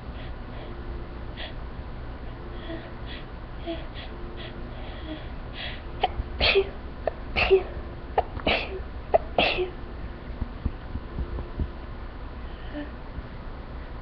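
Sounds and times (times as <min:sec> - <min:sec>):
person sneezing: 0:06.0 - 0:09.8.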